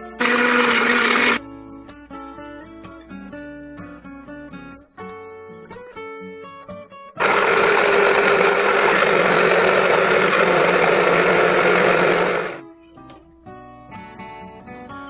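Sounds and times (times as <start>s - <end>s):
blender motor running: 0.0s - 1.4s, 7.2s - 12.6s
quiet acoustic guitar music: 1.4s - 7.2s.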